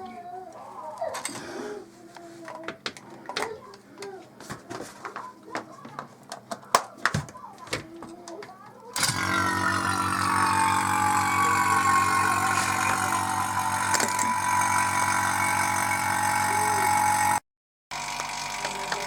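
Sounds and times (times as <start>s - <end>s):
vacuum pump motor hum: 9.0s - 19.0s.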